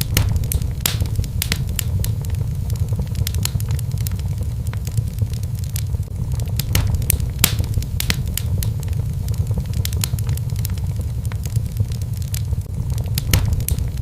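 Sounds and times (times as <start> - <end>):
low rumble of flames: 0.0 - 14.0
wood fire pops and snaps: 0.0 - 14.0.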